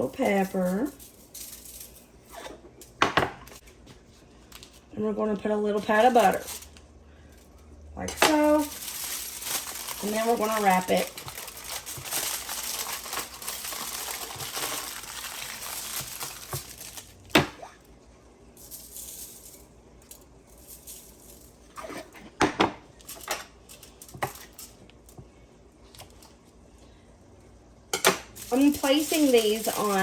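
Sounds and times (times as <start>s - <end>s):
aluminum foil crinkling: 4.0s - 17.3s, 23.0s - 25.1s, 28.3s - 30.0s.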